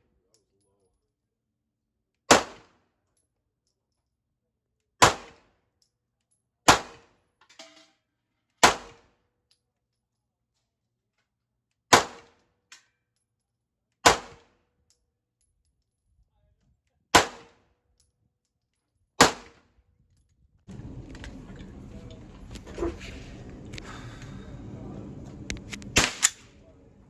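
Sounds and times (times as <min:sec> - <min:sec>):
pistol shots: 0:02.3 - 0:02.7, 0:05.0 - 0:05.4, 0:06.7 - 0:07.1, 0:08.6 - 0:09.1, 0:11.9 - 0:12.3, 0:14.0 - 0:14.5, 0:17.1 - 0:17.6, 0:19.2 - 0:19.6, 0:25.7 - 0:26.6.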